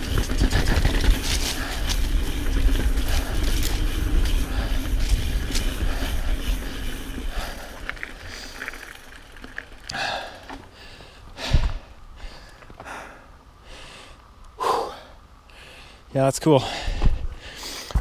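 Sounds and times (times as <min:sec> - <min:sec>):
wind on microphone: 0:00.0 - 0:07.7
rider breathing hard: 0:00.0 - 0:09.2, 0:09.8 - 0:18.0
mountain bike on trail: 0:00.0 - 0:14.2.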